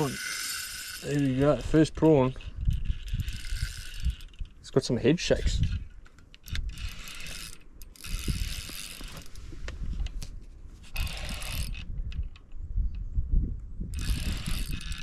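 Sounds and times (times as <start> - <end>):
fishing reel winding: 0.0 - 4.6, 5.3 - 9.4, 10.9 - 11.9, 14.0 - 15.0
wind rumble on microphone: 1.2 - 7.3, 8.0 - 15.0.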